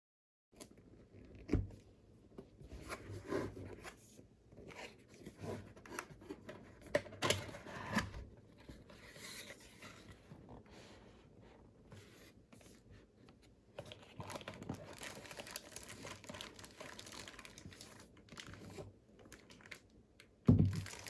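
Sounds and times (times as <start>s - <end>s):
cardboard and plastic rustling: 2.6s - 19.9s, 20.5s - 21.0s.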